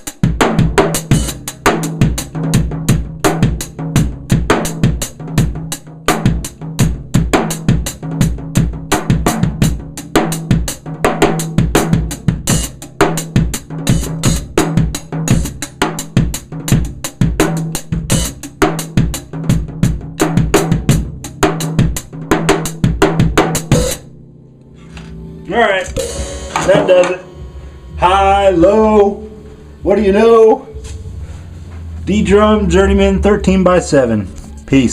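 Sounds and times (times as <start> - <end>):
drum kit playing a groove: 0.0 - 24.2, 24.8 - 34.9
low drum ring: 19.2 - 34.9.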